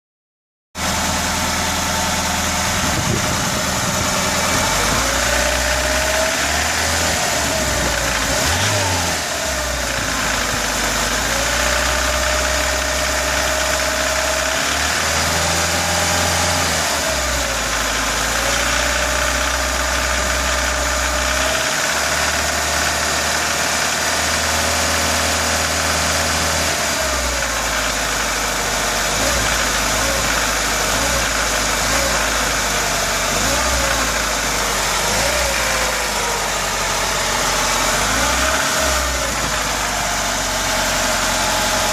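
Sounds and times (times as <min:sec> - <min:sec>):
car engine revving: 0:00.9 - 0:17.7, 0:29.0 - 0:41.9
engine knocking: 0:02.4 - 0:41.9.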